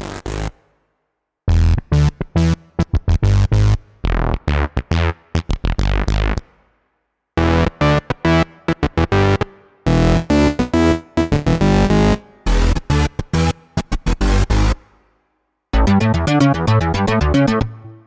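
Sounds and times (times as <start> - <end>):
synth bass riffs: 1.5 - 6.4, 7.4 - 14.8, 15.8 - 17.9.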